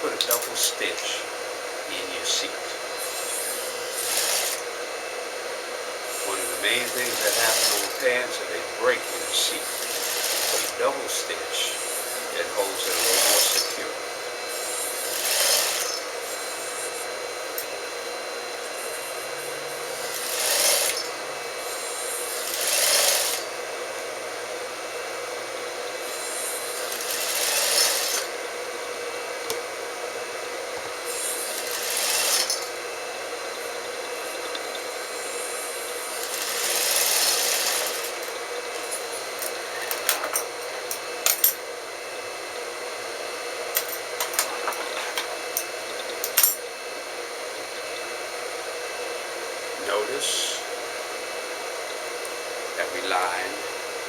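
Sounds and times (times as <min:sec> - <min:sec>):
motor hum: 0:00.0 - 0:54.0
sewing machine stitching: 0:03.3 - 0:04.6, 0:06.2 - 0:08.2, 0:09.2 - 0:11.0, 0:11.9 - 0:13.8, 0:14.6 - 0:16.1, 0:20.0 - 0:21.2, 0:22.4 - 0:23.5, 0:26.8 - 0:28.3, 0:31.2 - 0:32.7, 0:36.2 - 0:40.0.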